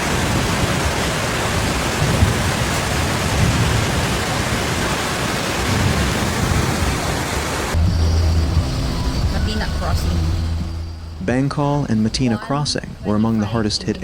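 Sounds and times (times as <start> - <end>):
heavy rain pouring: 0.0 - 14.0
low rumble: 7.7 - 12.3.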